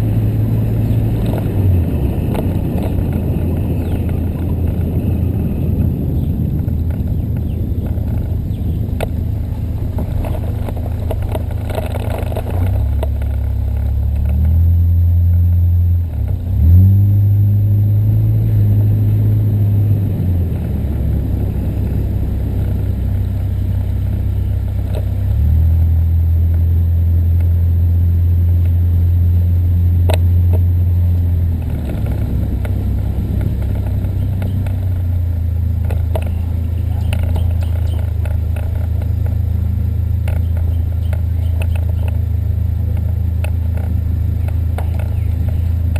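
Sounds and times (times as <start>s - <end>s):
car engine and road rumble: 0.0s - 45.9s.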